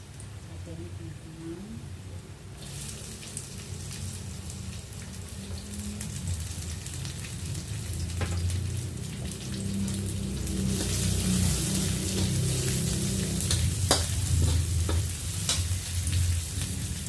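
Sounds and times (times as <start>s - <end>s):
food sizzling in hot oil: 2.6s - 17.0s.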